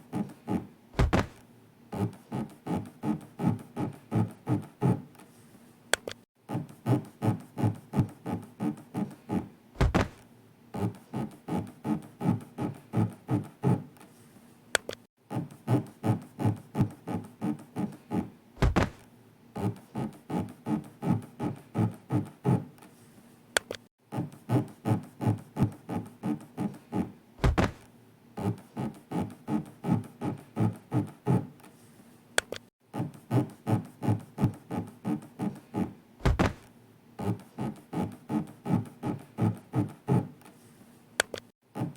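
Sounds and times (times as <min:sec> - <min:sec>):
heavy low thud: 0:01.0 - 0:01.4, 0:09.8 - 0:10.2, 0:18.6 - 0:19.0, 0:27.4 - 0:27.8, 0:36.2 - 0:36.7.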